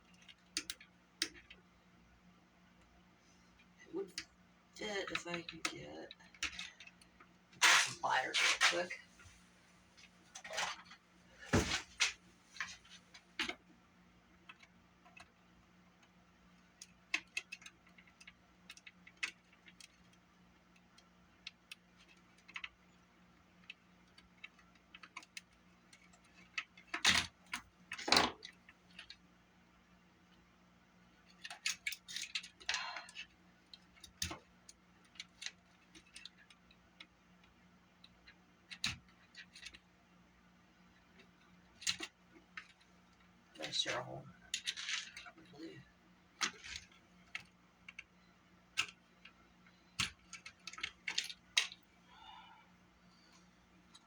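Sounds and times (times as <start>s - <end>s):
small parts and tools clattering: 43.6s - 45.5s, 46.4s - 48.1s, 50.0s - 51.9s.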